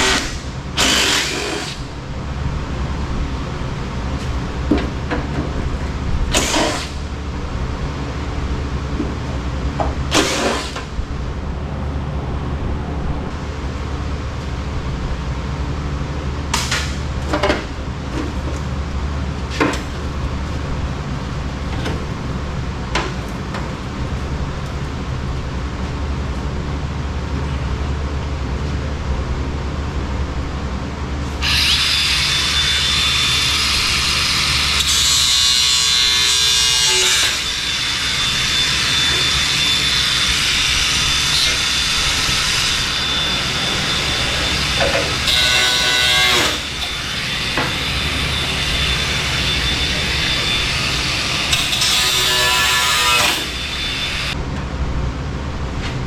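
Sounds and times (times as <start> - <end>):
hissing high-pitched power tool: 0.0 - 1.9, 6.3 - 7.0, 31.4 - 54.4
low running hum: 0.0 - 56.0.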